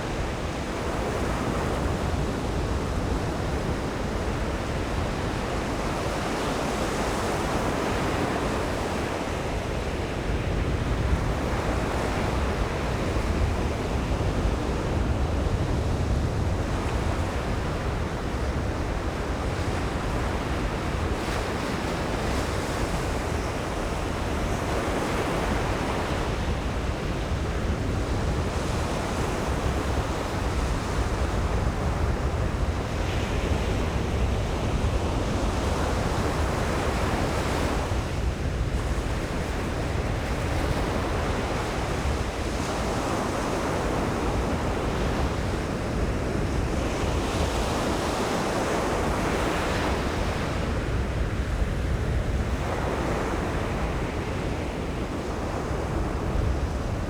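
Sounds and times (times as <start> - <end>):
wind rumbling on microphone: 0.0 - 57.0.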